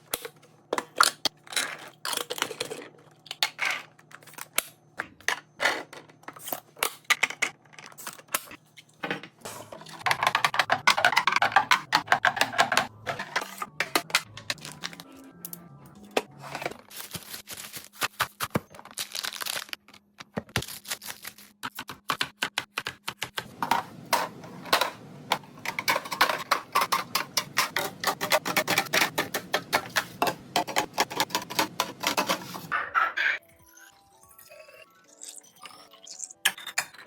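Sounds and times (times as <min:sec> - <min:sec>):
hard items clicking and clattering: 0:00.0 - 0:15.1, 0:23.4 - 0:33.4.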